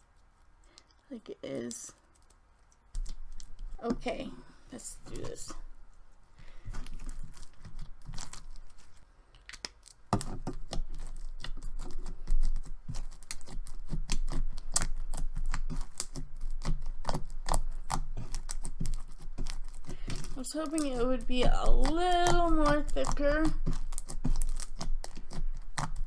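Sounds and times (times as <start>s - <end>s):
slime squished by hand: 6.6s - 26.0s.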